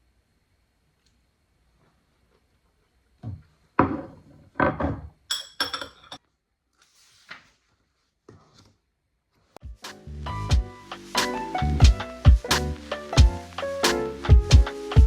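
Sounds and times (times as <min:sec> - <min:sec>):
dishes knocking and clinking: 0:03.2 - 0:06.2.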